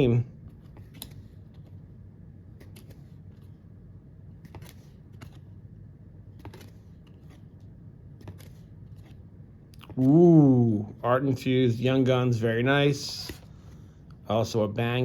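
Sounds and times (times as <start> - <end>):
card stock rustling: 0.0 - 5.6, 6.2 - 10.2
cards flipped by hand: 0.4 - 1.9, 2.5 - 3.6, 4.3 - 5.6, 6.3 - 10.2.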